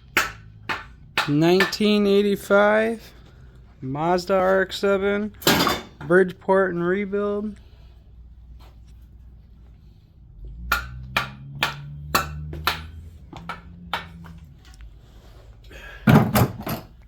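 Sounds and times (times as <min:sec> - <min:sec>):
low bass notes: 0:10.2 - 0:15.0.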